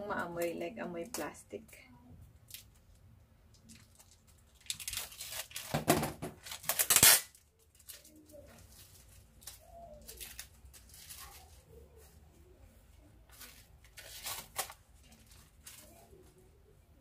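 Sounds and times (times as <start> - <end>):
plastic packaging crinkling: 2.4 - 12.1, 13.3 - 16.4
faint handling sounds: 7.4 - 17.0.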